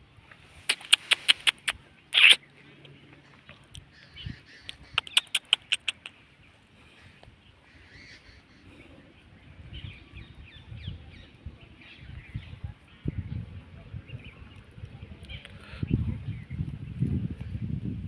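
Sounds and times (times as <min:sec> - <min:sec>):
squirrel chipping calls: 0:00.7 - 0:02.4, 0:04.5 - 0:06.2
faint bird chirps: 0:03.9 - 0:06.2.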